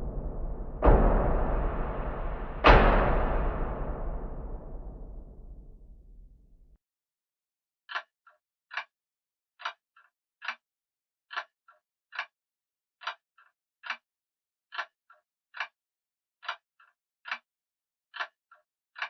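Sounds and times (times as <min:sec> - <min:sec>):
low rumble: 0:00.0 - 0:06.7.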